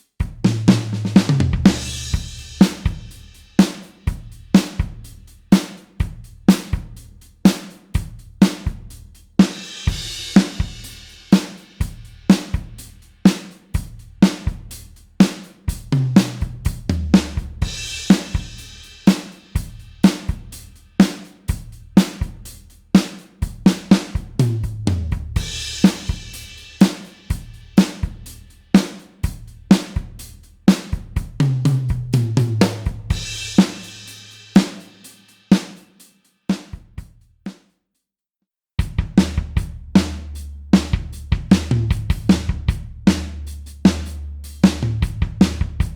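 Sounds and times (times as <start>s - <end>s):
drum kit playing a beat: 0.0s - 37.3s, 38.8s - 45.9s
tom fill: 0.4s - 5.0s, 23.4s - 35.1s.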